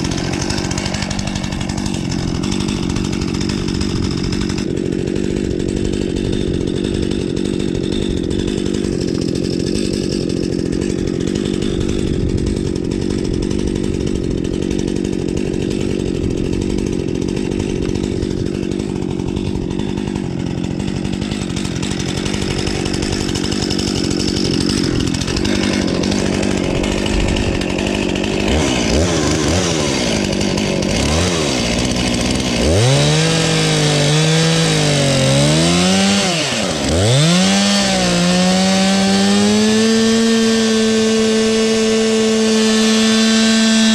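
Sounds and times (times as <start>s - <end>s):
chainsaw cutting log: 0.0s - 43.9s.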